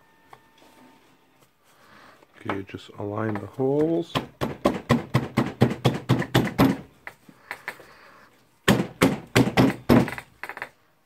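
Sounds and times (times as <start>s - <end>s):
tool parts knocking together: 8.7s - 10.8s.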